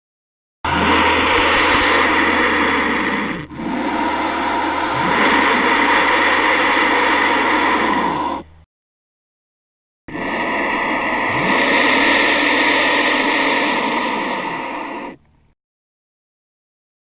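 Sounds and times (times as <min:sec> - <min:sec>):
rough creature call: 0:00.7 - 0:08.7, 0:10.1 - 0:15.2.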